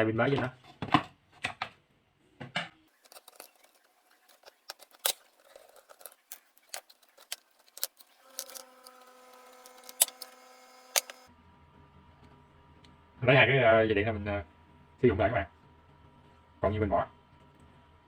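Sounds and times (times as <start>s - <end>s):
small parts clicking and tapping: 2.9s - 11.3s.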